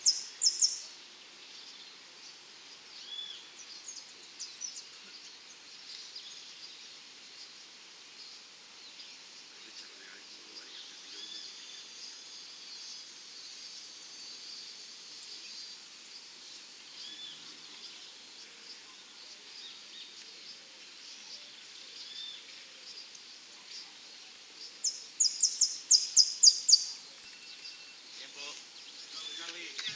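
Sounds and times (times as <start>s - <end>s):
finch singing: 0.0s - 1.0s, 24.4s - 29.7s.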